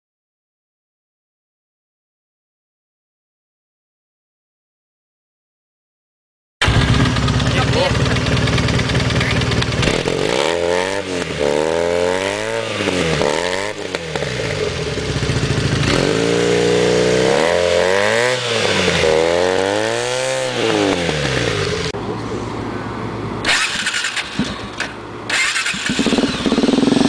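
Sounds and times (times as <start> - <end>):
motorcycle engine revving and idling: 6.6 - 22.0, 23.4 - 27.0.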